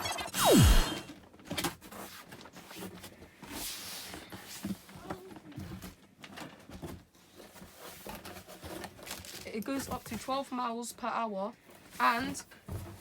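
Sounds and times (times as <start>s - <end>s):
packaging rustling: 1.2s - 10.5s.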